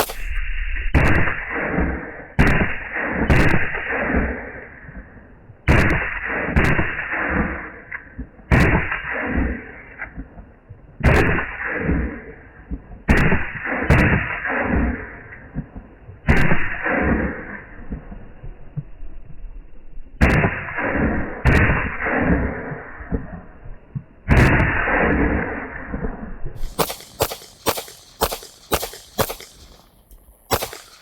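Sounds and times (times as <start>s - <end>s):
pistol shots with echo: 0.0s - 0.3s, 1.0s - 4.4s, 26.6s - 31.0s.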